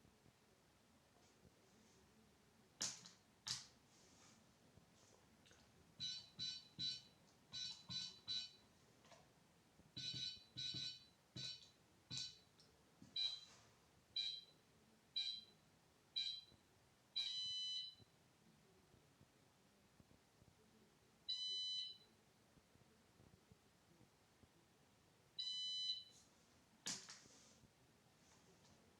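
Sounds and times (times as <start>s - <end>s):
electronic timer beeping: 6.0s - 8.6s, 10.0s - 12.4s.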